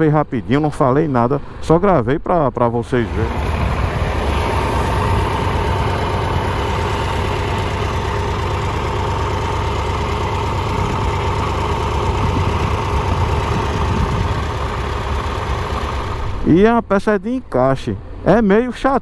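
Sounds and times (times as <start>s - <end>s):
motorcycle engine idling: 4.8s - 16.3s.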